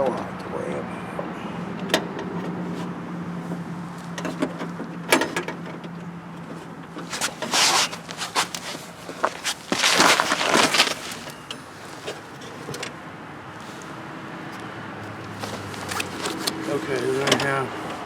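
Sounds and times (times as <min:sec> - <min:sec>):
scraping rustle: 0:07.0 - 0:12.7, 0:15.3 - 0:17.6.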